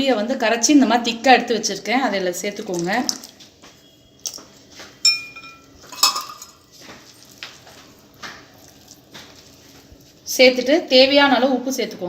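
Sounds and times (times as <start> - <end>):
spoon clinking and scraping bowl: 5.0 - 7.4.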